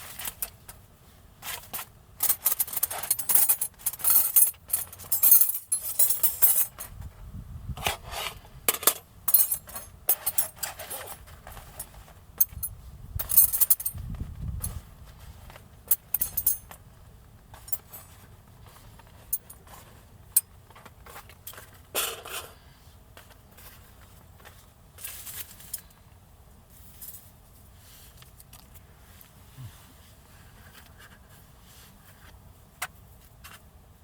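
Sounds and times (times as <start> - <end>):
gear clinking and scraping: 0.0 - 0.8, 1.4 - 7.0, 7.8 - 22.6, 23.2 - 26.0.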